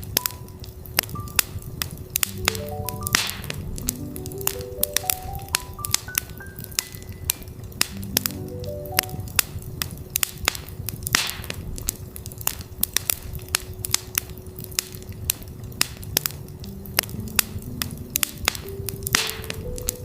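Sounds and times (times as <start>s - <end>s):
campfire crackling and popping: 0.0s - 20.0s
fire flaring hiss: 0.0s - 20.0s
soft rising pitched notes: 2.2s - 7.3s, 7.9s - 9.4s.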